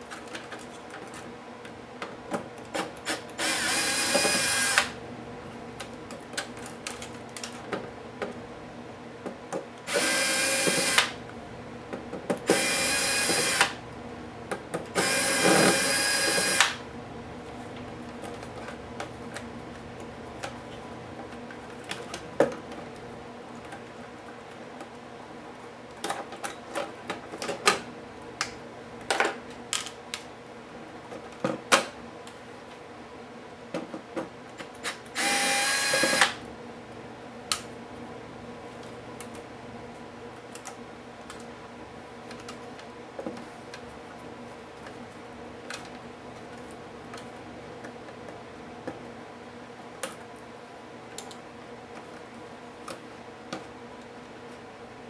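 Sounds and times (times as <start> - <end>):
electric screwdriver whirring: 3.1 - 5.0, 9.9 - 11.2, 12.5 - 13.8, 15.0 - 16.8, 35.2 - 36.4.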